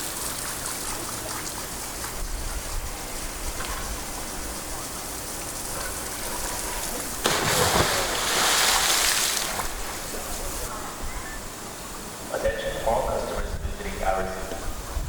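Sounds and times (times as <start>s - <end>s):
water rushing: 0.0s - 10.9s
water splashing surge: 7.2s - 10.7s.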